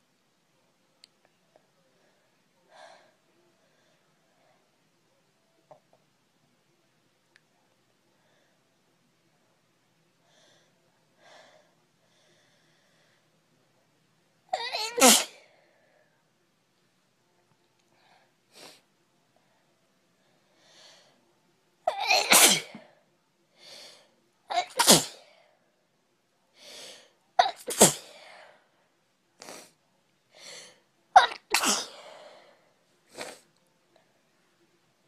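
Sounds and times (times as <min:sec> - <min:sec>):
girl sneezing: 0:21.9 - 0:22.8, 0:24.5 - 0:25.2, 0:27.4 - 0:28.2, 0:31.2 - 0:32.1.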